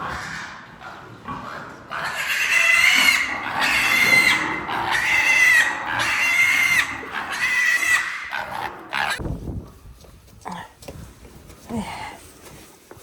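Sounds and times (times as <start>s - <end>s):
pig squealing: 0.0s - 9.2s.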